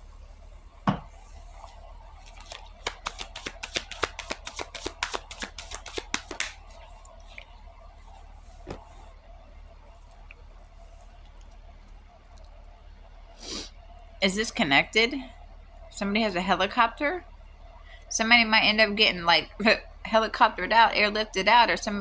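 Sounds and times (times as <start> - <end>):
soft knock: 0.9 - 1.1
thump: 0.9 - 1.1
cards being shuffled: 2.2 - 6.8.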